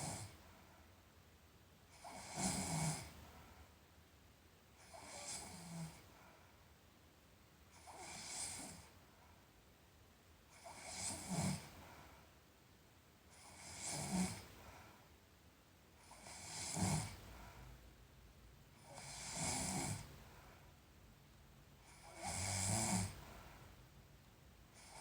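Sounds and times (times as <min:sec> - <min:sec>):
person snoring: 0:18.9 - 0:20.1, 0:21.9 - 0:23.3.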